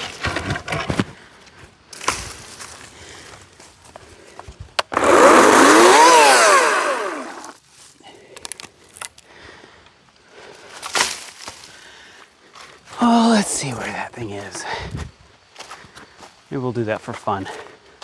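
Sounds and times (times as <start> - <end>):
chainsaw revving: 4.8 - 7.6.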